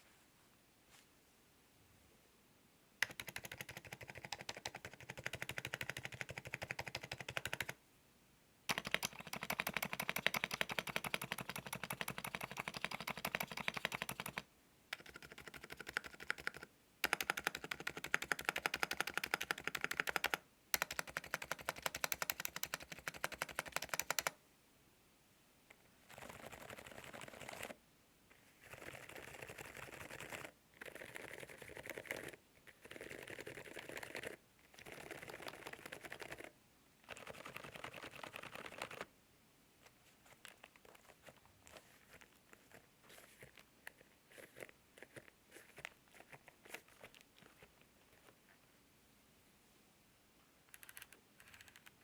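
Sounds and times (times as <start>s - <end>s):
fast typing on mechanical keyboard: 3.0s - 7.8s, 8.7s - 24.4s, 26.1s - 27.8s, 28.6s - 39.1s, 50.7s - 52.0s.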